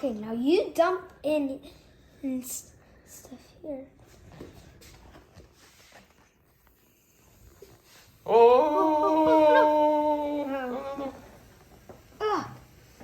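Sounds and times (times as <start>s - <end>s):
long steady cry: 8.2s - 11.5s.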